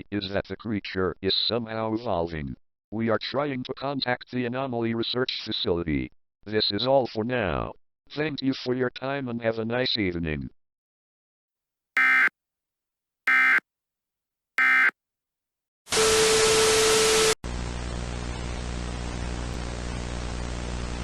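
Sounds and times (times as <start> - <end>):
digital data tones: 12.0 - 12.3, 13.3 - 13.6, 14.6 - 14.9.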